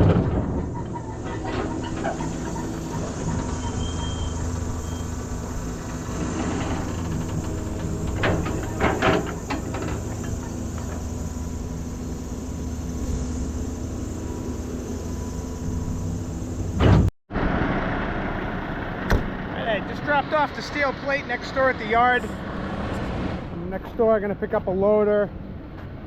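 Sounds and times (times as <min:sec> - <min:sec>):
metallic clanks and rattles: 0:00.0 - 0:11.1
diesel engine running: 0:00.0 - 0:26.0.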